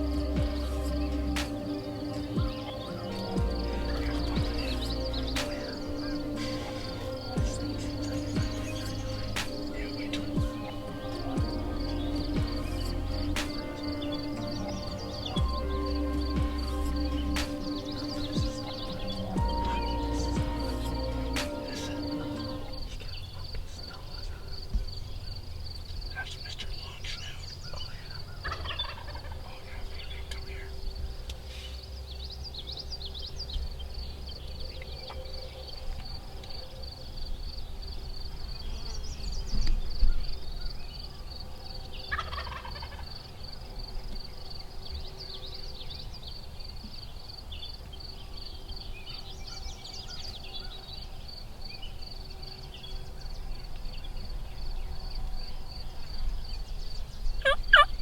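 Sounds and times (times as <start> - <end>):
high pulsing trill: 0.0 - 22.9
turkey gobbling: 57.4 - 57.9.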